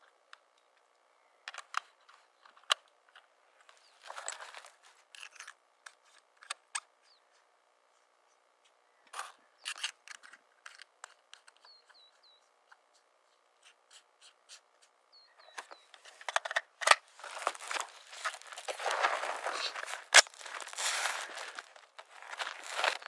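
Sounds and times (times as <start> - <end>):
footsteps crunching on dry ground: 3.7 - 5.1, 17.0 - 23.0.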